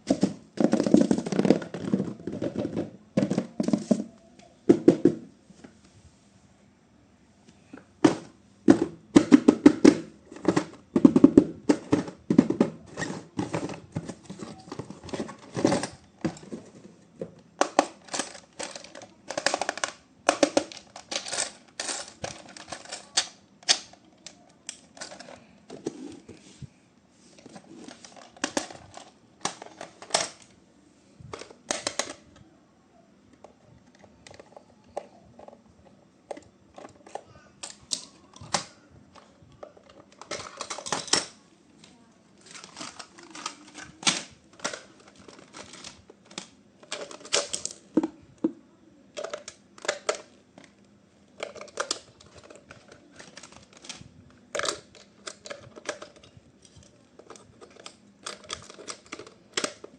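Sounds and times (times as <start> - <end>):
toy packaging clicks and crackles: 9.9 - 25.9, 27.4 - 30.5, 31.3 - 32.2, 33.4 - 41.4, 42.4 - 48.0, 49.1 - 59.9.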